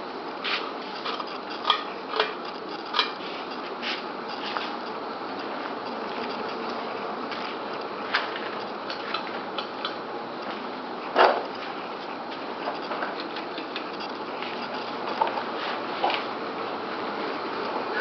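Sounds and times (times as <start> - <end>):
ceiling fans whirring: 0.0 - 18.0.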